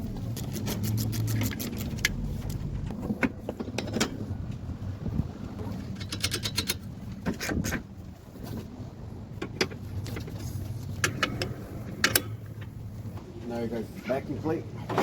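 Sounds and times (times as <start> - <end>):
sharp clicks and knocks: 0.0 - 4.6, 5.8 - 7.8, 9.4 - 12.8.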